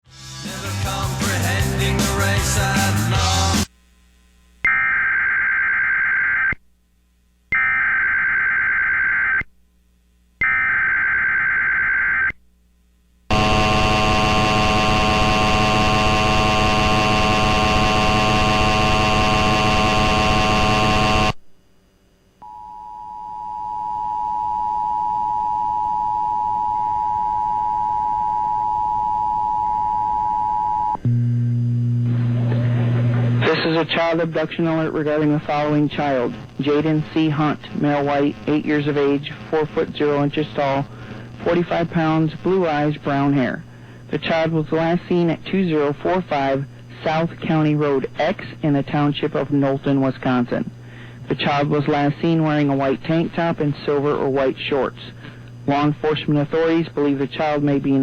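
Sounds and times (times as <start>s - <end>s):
harsh steady alert tone: 13.3s - 21.4s
two-tone attention signal: 22.4s - 31.1s.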